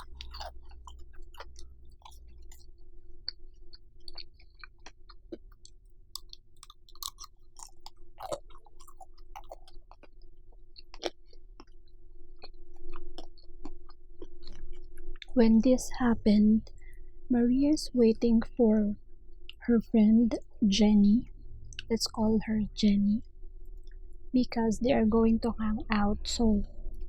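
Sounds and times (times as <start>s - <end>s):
close chewing: 0.0s - 15.4s
wet mouth clicks and smacks: 4.0s - 10.2s.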